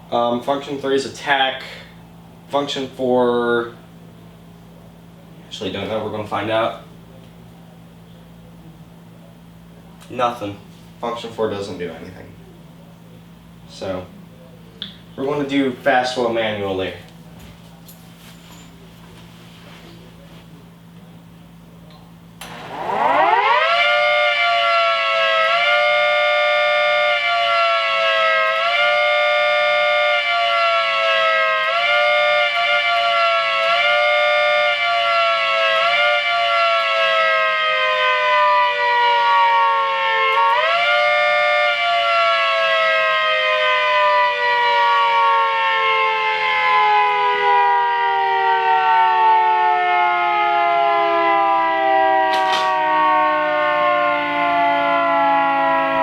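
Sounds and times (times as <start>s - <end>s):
hand-cranked siren wailing: 22.5s - 56.0s.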